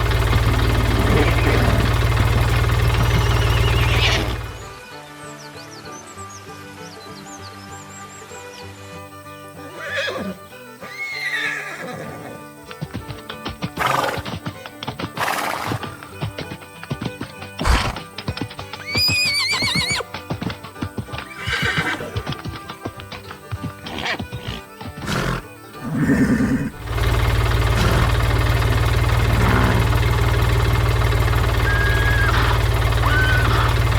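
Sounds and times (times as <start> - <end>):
hooves clip-clopping: 0.0 - 4.8, 12.3 - 33.9
sharp noisy bursts: 0.0 - 4.8, 26.8 - 33.9
horse whinnying: 0.6 - 4.8, 9.6 - 12.6, 13.7 - 14.5, 15.2 - 16.1, 17.6 - 20.3, 21.1 - 22.5, 23.6 - 26.8, 27.7 - 28.3, 29.2 - 30.0, 31.6 - 33.9.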